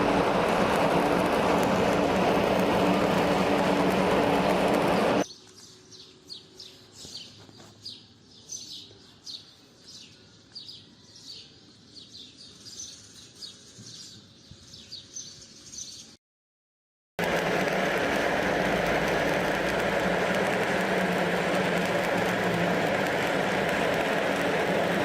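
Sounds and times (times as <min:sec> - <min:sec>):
welding arc crackling: 0:00.0 - 0:05.2, 0:17.2 - 0:25.0
small birds chirping: 0:04.7 - 0:16.2.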